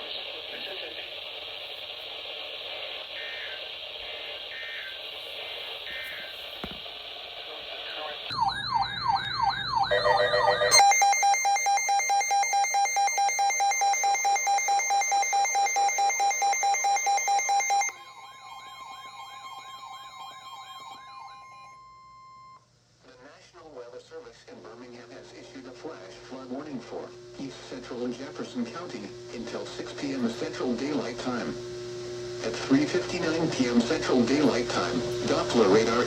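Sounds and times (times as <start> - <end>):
radio hiss: 0.0 - 8.4, 23.0 - 36.0
warbling siren sweeps: 8.3 - 11.2, 17.8 - 21.8
pulsing alarm tone: 8.3 - 22.6
steady tone: 17.2 - 22.6.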